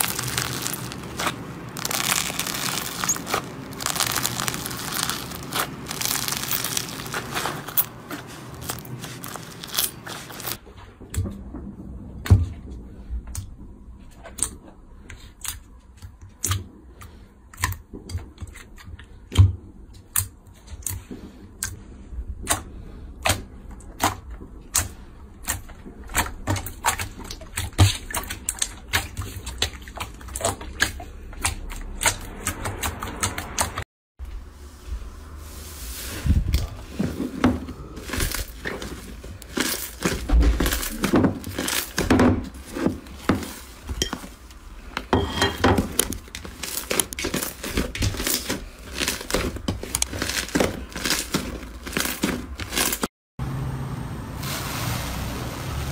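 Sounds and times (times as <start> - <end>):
crunchy slime crackling: 0.0 - 10.6, 37.7 - 44.2, 45.9 - 53.1.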